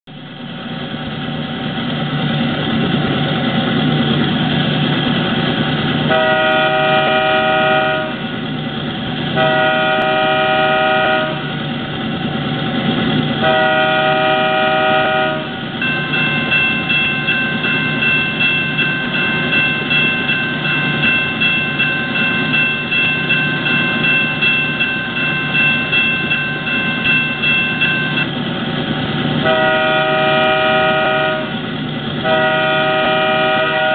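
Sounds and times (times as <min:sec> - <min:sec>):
diesel engine running: 0:00.1 - 0:33.9
locomotive horn blasts: 0:06.1 - 0:08.3, 0:09.4 - 0:11.6, 0:13.4 - 0:15.6, 0:29.4 - 0:31.6, 0:32.2 - 0:33.9
locomotive bell ringing: 0:13.9 - 0:28.4.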